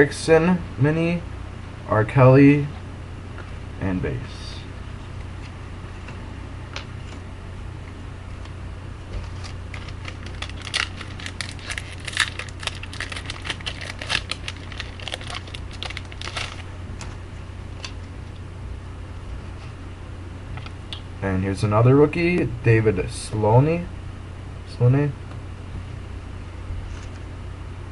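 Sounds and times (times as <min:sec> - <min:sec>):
steady low hum: 0:00.0 - 0:27.9
wrapper being torn and crinkled: 0:09.2 - 0:16.7.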